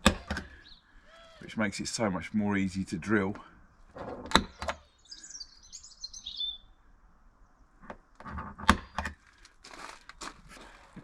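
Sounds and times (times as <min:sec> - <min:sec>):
bird chirping: 0:00.0 - 0:01.7, 0:03.6 - 0:07.8.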